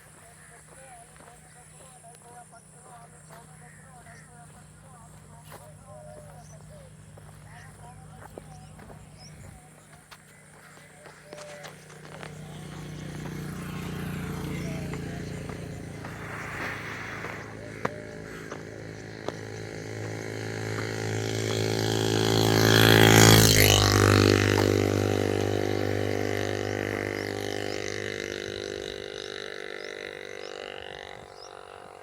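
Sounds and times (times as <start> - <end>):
vehicle engine passing by: 11.3 - 32.0.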